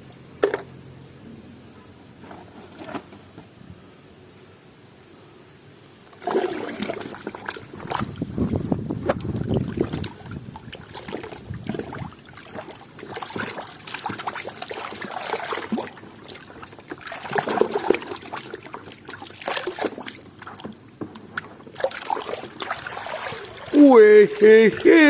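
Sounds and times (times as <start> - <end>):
water splashing and trickling: 6.1 - 25.0.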